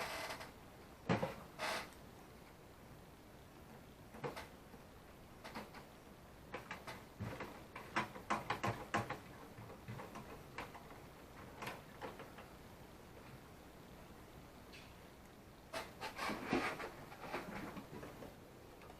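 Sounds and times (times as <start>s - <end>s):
small clicks and light knocks: 3.6s - 12.6s.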